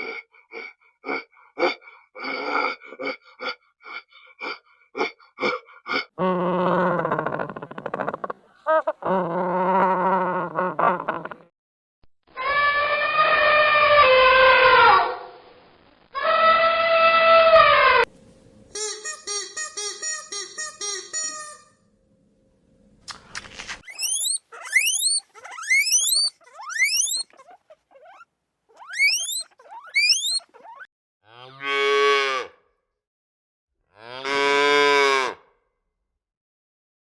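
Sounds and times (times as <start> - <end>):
rising chirps: 23.9 - 27.3, 28.8 - 30.8
short pitched calls: 23.9 - 30.9.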